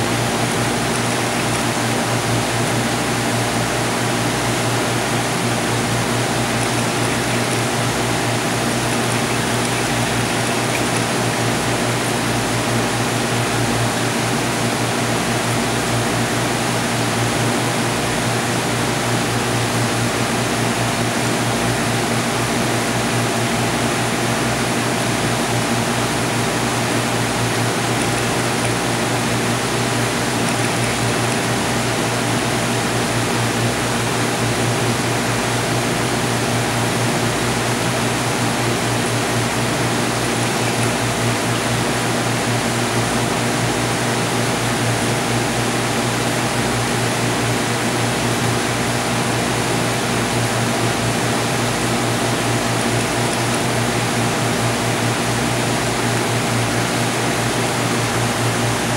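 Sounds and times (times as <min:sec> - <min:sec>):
rushing water: 0:00.0 - 0:03.3, 0:04.4 - 0:14.2, 0:25.8 - 0:33.3, 0:38.2 - 0:41.9.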